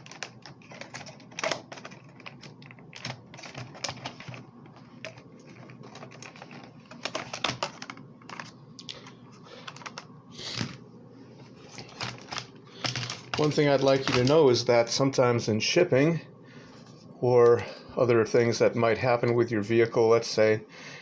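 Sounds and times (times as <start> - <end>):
plastic clacks: 0.0 - 10.8.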